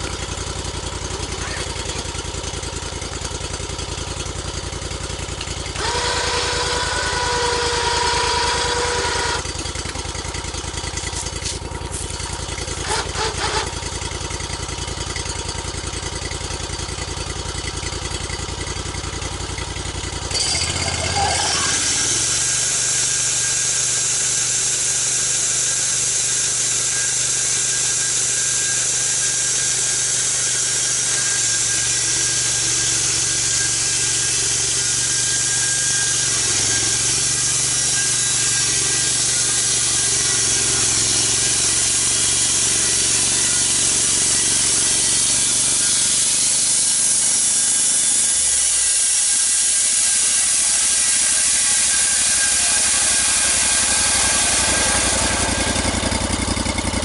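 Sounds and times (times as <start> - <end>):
engine running under load: 0.0 - 57.0
saw blade hissing through wood: 5.8 - 9.5, 11.0 - 13.8, 20.4 - 57.0.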